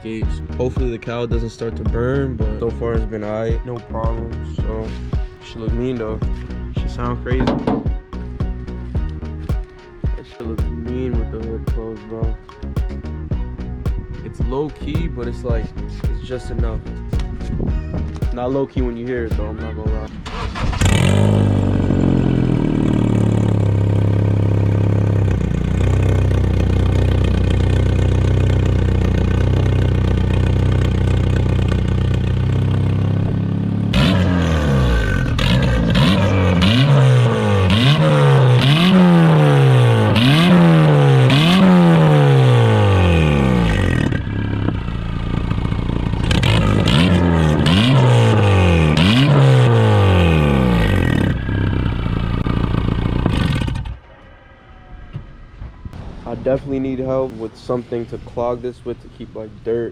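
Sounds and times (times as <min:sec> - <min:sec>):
car engine idling and revving: 0:00.0 - 0:11.6, 0:19.3 - 0:56.2
engine exhaust cracks: 0:06.2 - 0:09.8, 0:17.2 - 0:18.4, 0:19.3 - 0:54.0.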